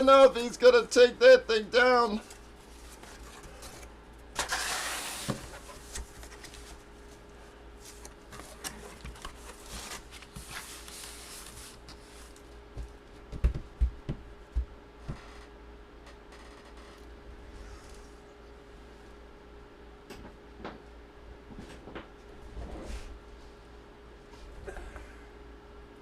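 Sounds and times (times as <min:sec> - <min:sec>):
faint steady hum: 0:00.0 - 0:26.0
rustle on a tabletop: 0:09.3 - 0:12.5.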